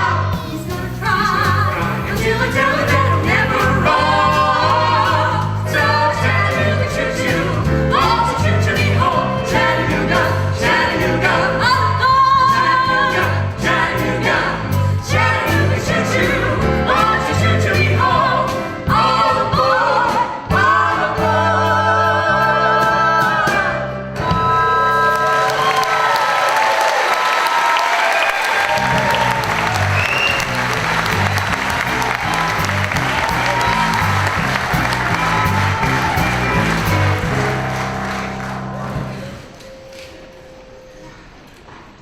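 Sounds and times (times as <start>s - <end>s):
voices singing together: 0.0s - 25.7s
instrumental accompaniment: 28.7s - 41.7s
stepping bass line: 28.8s - 38.2s.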